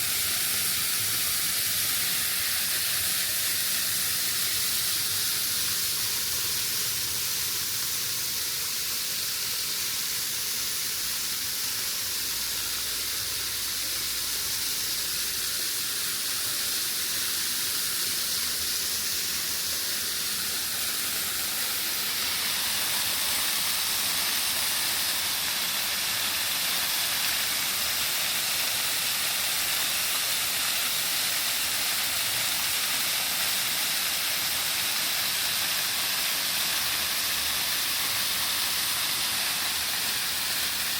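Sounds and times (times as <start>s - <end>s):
waterfall pouring: 0.0s - 40.9s.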